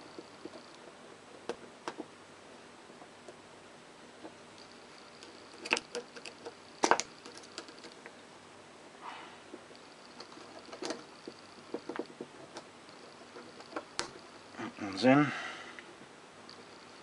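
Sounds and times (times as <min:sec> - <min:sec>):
screwdriver clicking on metal parts: 0:04.6 - 0:08.0.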